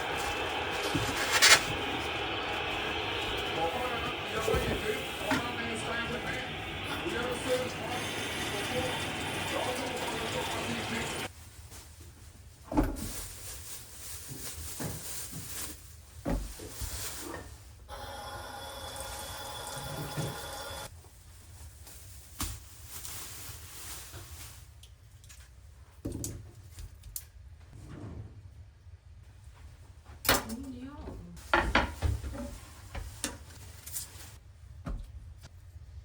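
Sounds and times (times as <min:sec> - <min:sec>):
water running from a tap: 0:00.0 - 0:11.3, 0:18.5 - 0:20.9
kitchenware knocking and clattering: 0:31.6 - 0:32.3.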